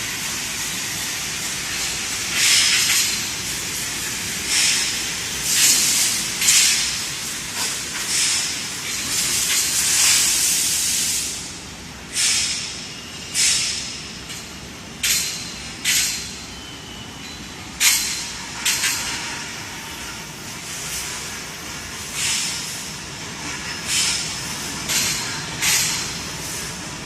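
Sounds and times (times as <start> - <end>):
pressurised gas hissing: 0.4 - 11.5
short bursts of gas hiss: 0.4 - 14.1, 20.6 - 23.0.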